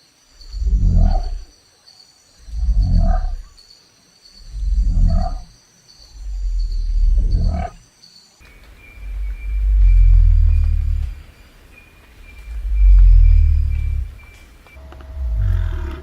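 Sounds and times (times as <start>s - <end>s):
low steady rumble: 0.4s - 1.4s, 4.4s - 5.5s, 6.1s - 7.8s, 8.8s - 11.4s, 12.2s - 16.0s
deep loud animal calls: 0.4s - 1.5s, 2.4s - 3.6s, 4.4s - 5.5s, 6.1s - 7.8s, 8.7s - 11.3s, 12.3s - 16.0s.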